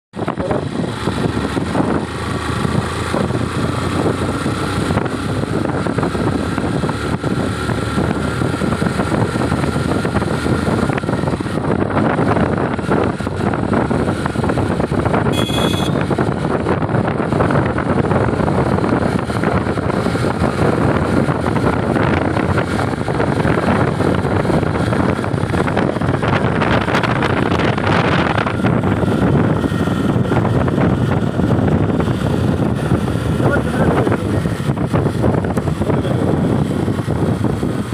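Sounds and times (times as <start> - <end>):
motorcycle engine: 0.1 - 37.9
wind rushing over microphone: 0.1 - 37.9
short high beep: 15.3 - 16.1.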